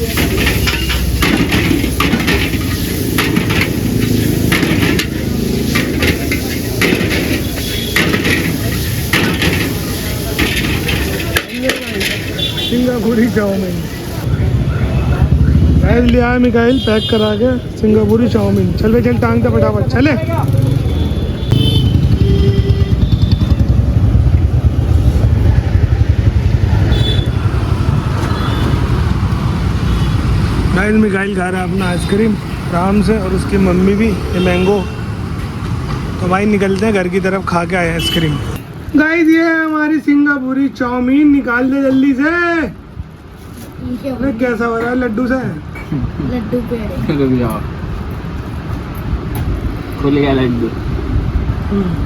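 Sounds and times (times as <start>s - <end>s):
food sizzling: 0.0s - 14.3s
faint traffic tones: 0.0s - 52.0s
vehicle engine and road rumble: 0.0s - 52.0s
metal spatula clanking on wok: 0.1s - 12.4s.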